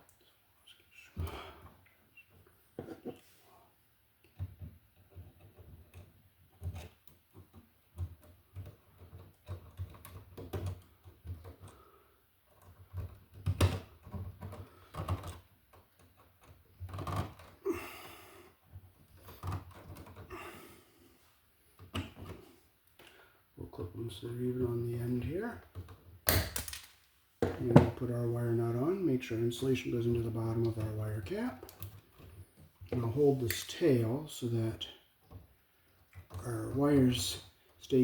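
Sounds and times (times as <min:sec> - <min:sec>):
tools clicking and tapping on wires: 0:04.2 - 0:11.8, 0:12.4 - 0:17.6, 0:18.6 - 0:20.3, 0:25.6 - 0:27.7, 0:30.4 - 0:34.0, 0:35.2 - 0:38.0.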